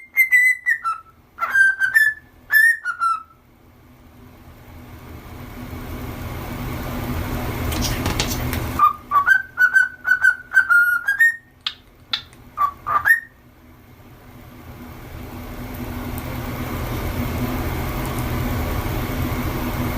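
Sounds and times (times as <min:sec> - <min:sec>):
cockatiel whistling: 0:00.0 - 0:03.4, 0:08.8 - 0:13.4
low background hum: 0:00.0 - 0:19.9.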